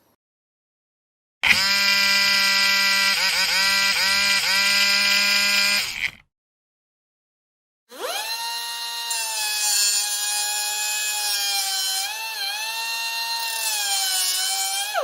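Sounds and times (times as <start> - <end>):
electric drill whining: 1.4 - 6.2, 7.9 - 15.0.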